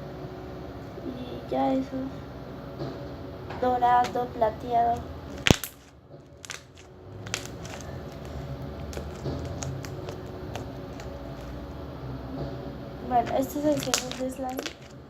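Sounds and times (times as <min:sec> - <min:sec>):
slime squeezed crackling pops: 0:05.4 - 0:11.6.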